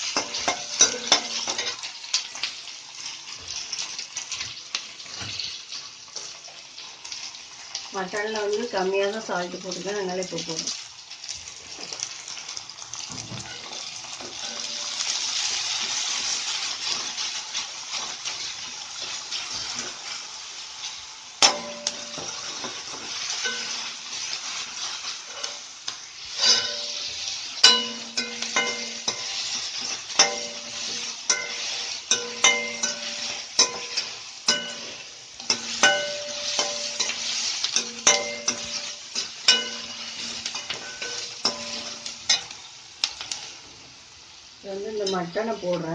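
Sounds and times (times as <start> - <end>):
onions sizzling in hot oil: 0.0 - 45.9
ladle knocking ringing pan: 27.6 - 29.3, 30.2 - 30.7, 31.3 - 37.2, 37.8 - 40.0, 40.6 - 42.4.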